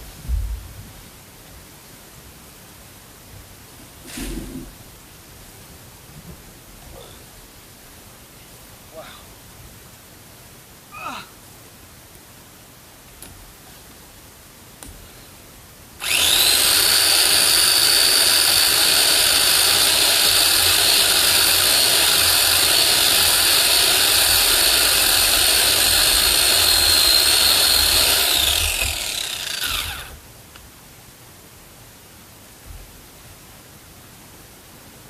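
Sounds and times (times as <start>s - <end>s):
electric chainsaw cutting wood: 16.0s - 30.2s.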